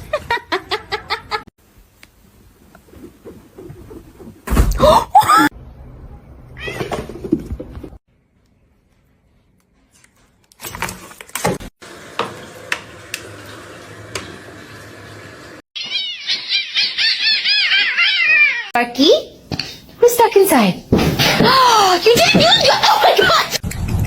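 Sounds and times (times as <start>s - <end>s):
cat meowing: 15.8s - 18.7s.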